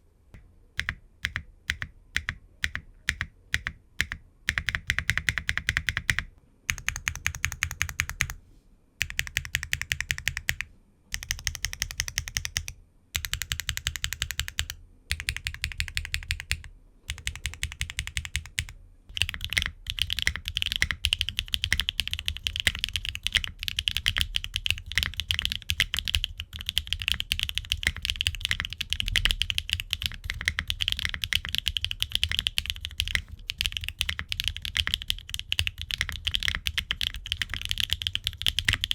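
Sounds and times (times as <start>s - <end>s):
mechanical keyboard typing: 0.8s - 8.4s, 9.0s - 38.9s.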